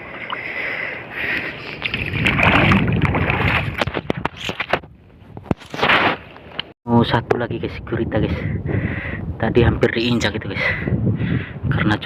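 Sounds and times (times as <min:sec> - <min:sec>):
water sloshing and splashing: 0:00.0 - 0:04.9
wind buffeting microphone: 0:01.7 - 0:05.6, 0:06.9 - 0:12.0.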